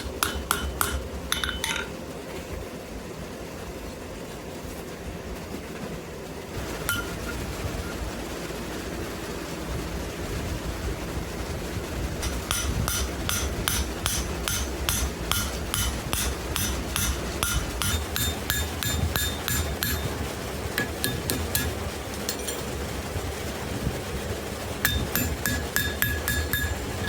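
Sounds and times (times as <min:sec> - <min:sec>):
hammer striking iron on anvil: 0:00.0 - 0:01.9, 0:06.9 - 0:07.3, 0:12.2 - 0:20.2, 0:20.8 - 0:22.7, 0:24.8 - 0:27.0.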